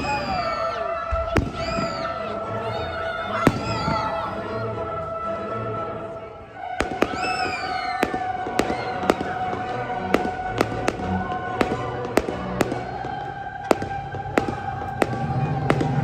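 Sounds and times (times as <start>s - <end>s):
falling firework whistle: 0.0s - 2.4s, 3.3s - 4.4s, 6.8s - 16.0s
fireworks bangs: 0.0s - 4.7s, 6.6s - 16.0s.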